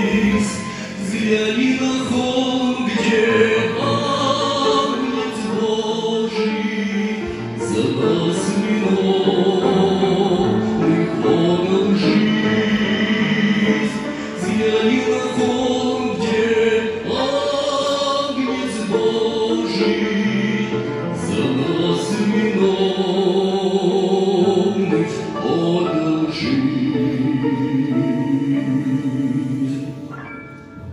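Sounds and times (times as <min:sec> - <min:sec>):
choir singing a hymn: 0:00.0 - 0:30.1.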